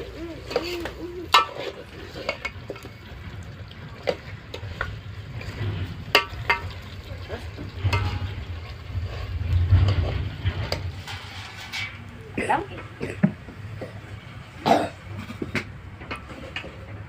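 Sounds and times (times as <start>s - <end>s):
low steady rumble: 1.1s - 14.6s.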